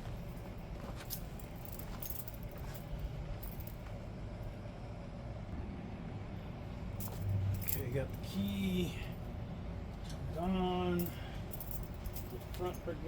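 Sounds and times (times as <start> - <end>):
keys jingling: 0.0 - 3.9, 7.0 - 9.2, 11.0 - 13.0
low background rumble: 0.0 - 13.0.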